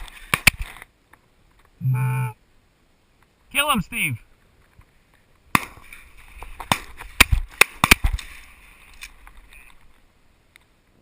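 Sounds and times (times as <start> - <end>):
shotgun blasts: 5.5 - 5.8, 6.6 - 8.2.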